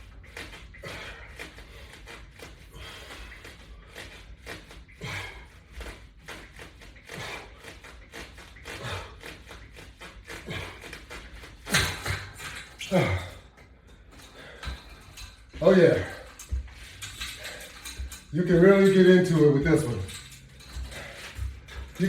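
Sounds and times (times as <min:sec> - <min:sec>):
resistance band rustling: 0:00.0 - 0:22.0
short exhalations: 0:05.0 - 0:05.5, 0:12.8 - 0:13.5.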